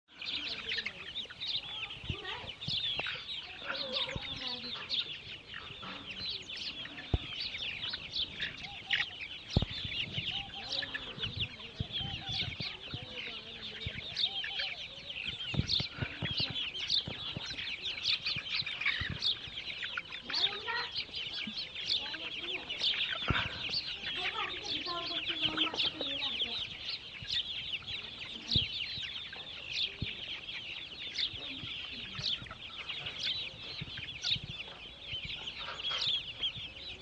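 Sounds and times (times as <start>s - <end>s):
chickens clucking: 0.1s - 37.0s
chicks cheeping: 0.1s - 37.0s.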